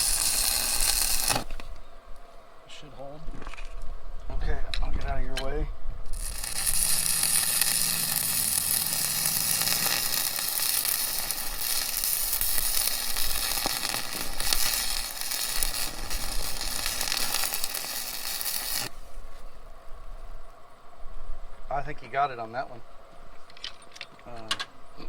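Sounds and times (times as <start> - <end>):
welding arc hissing: 0.0 - 1.8, 6.0 - 19.6.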